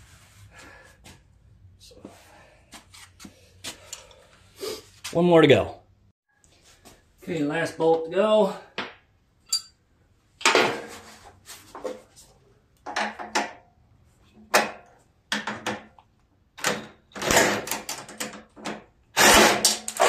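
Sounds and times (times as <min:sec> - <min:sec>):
tool and metal handling noise: 0:09.5 - 0:09.8.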